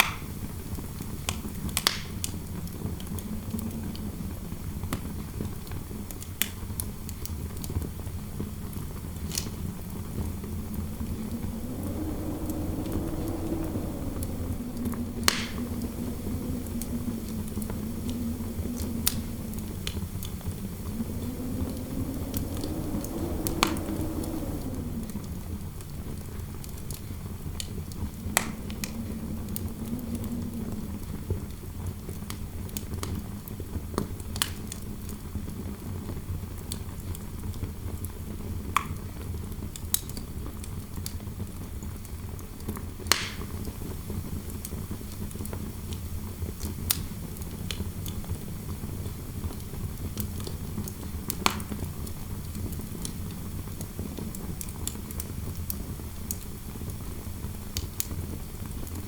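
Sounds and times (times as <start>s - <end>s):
fireplace crackling and popping: 0.0s - 0.3s, 1.2s - 5.0s, 6.0s - 31.1s, 42.7s - 43.4s
low wind rumble: 0.0s - 36.8s, 41.3s - 59.0s
low wind howl: 0.0s - 37.1s, 42.2s - 59.0s.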